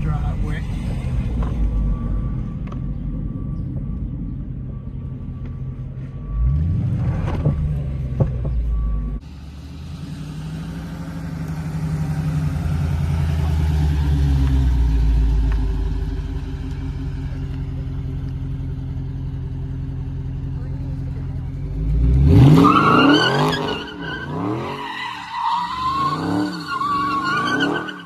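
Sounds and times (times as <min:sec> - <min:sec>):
car engine revving: 0:00.0 - 0:28.0.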